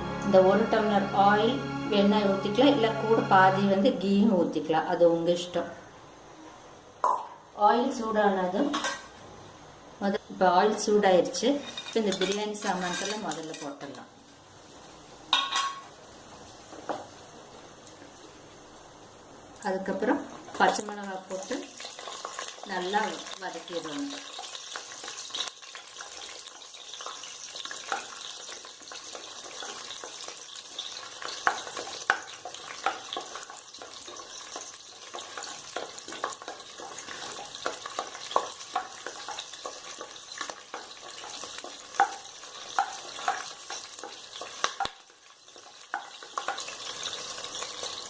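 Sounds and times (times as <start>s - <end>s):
chillies sizzling in hot oil: 7.0s - 48.0s
spoon scraping a pan: 11.6s - 13.8s, 27.0s - 44.9s.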